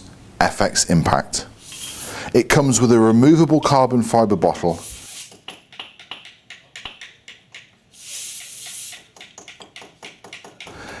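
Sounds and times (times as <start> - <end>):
hiss of escaping air: 1.6 - 2.3, 4.7 - 5.4, 7.9 - 9.1.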